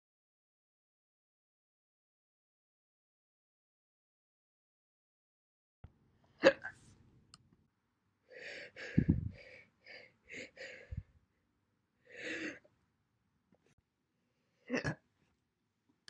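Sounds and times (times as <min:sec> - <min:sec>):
person gasping and hiccuping: 0:06.4 - 0:06.7, 0:14.7 - 0:15.0.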